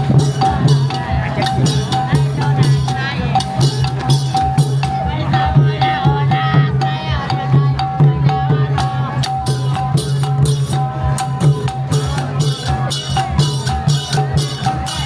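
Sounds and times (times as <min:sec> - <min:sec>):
drums and percussion: 0:00.0 - 0:15.0.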